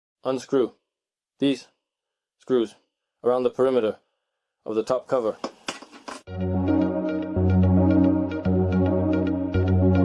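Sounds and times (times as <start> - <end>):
electronic music with steady beat: 6.3 - 10.0.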